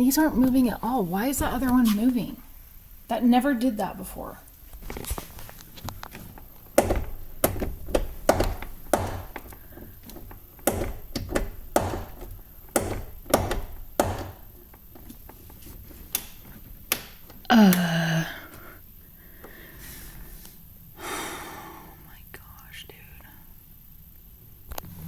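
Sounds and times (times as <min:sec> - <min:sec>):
car door knocking and clicking: 0:05.8 - 0:15.4.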